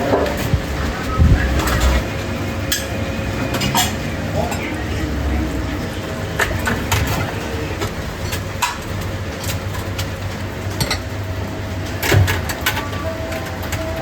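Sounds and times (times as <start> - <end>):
utensils and crockery clicking: 2.6 - 4.7, 6.4 - 11.2, 11.8 - 14.0.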